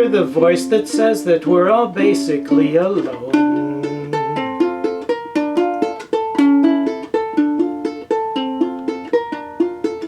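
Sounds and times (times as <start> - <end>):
fingerpicked ukulele: 0.0 - 10.0
person singing: 1.3 - 5.2.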